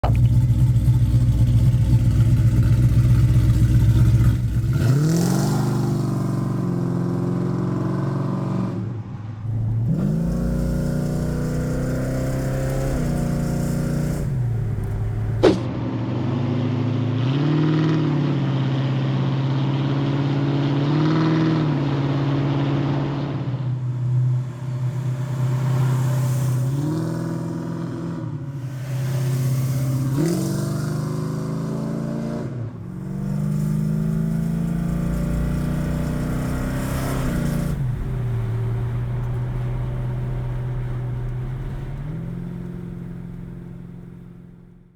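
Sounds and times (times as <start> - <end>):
car engine revving: 0.0 - 44.9
sharp click: 14.8 - 15.7.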